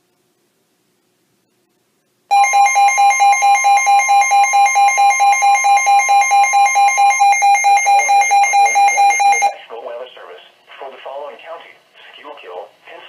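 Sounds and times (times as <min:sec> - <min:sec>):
rapid pulsing electronic beep: 0:02.3 - 0:09.5
steady warning alarm tone: 0:02.3 - 0:09.6.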